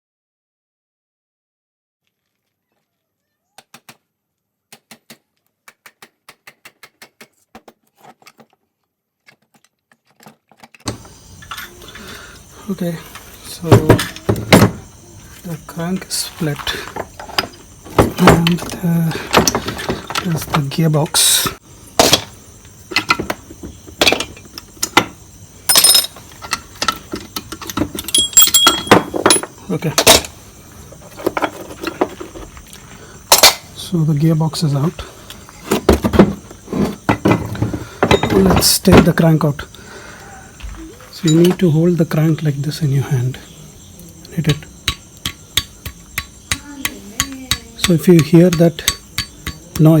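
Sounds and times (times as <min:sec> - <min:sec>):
metal engine parts clinking: 0:10.1 - 0:12.0, 0:25.7 - 0:30.3, 0:38.0 - 0:38.8, 0:41.2 - 0:41.6
sharp knocks on engine crankcase: 0:44.5 - 0:50.0.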